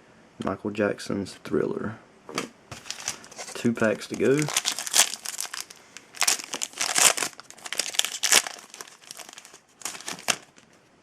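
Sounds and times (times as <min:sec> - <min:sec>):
card pack wrapper tearing and crinkling: 0:02.8 - 0:10.6.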